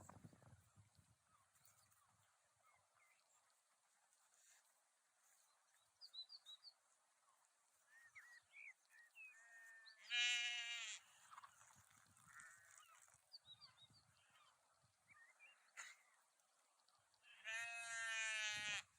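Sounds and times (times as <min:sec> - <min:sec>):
sheep bleating: 0:10.0 - 0:11.3, 0:17.2 - 0:18.9.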